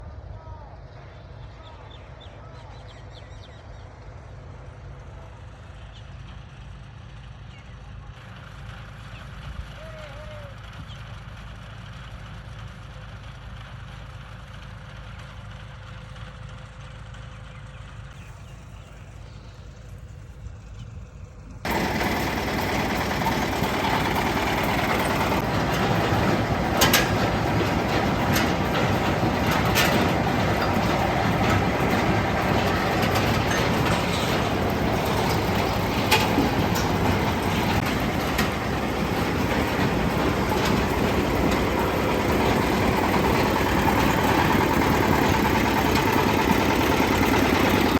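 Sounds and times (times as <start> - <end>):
low engine rumble: 0.0 - 47.9
machine clatter: 21.6 - 47.9.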